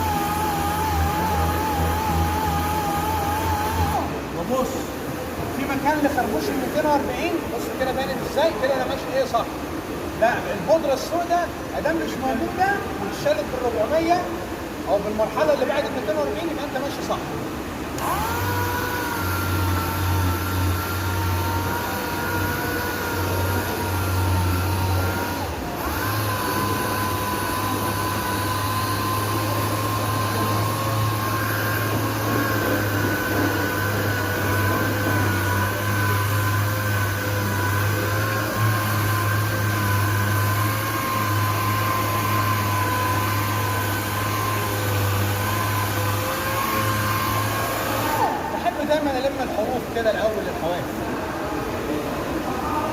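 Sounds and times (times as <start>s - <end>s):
power sander whining: 0.0s - 7.5s, 17.9s - 48.6s.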